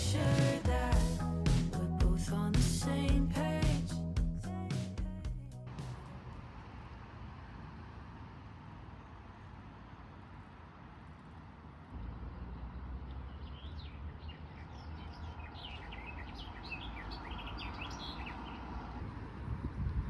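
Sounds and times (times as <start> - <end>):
low outdoor rumble: 0.0 - 13.4
small birds chirping: 13.1 - 18.8.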